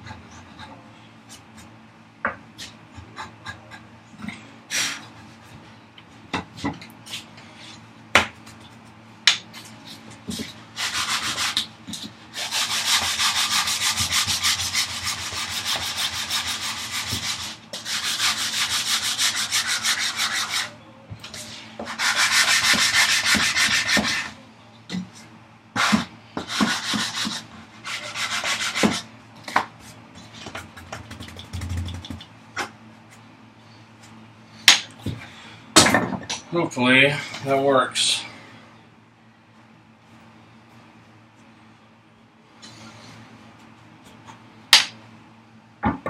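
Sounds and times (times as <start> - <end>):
hand sanding wood strokes: 10.8 - 20.7, 21.4 - 24.3, 25.8 - 29.1.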